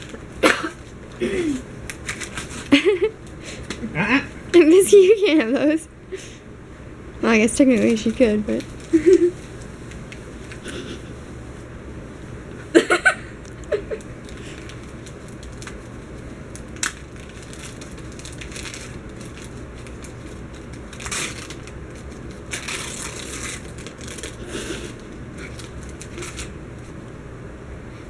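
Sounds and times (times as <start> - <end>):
wrapping paper crinkling: 0.0 - 3.7, 7.7 - 10.6, 13.4 - 27.0.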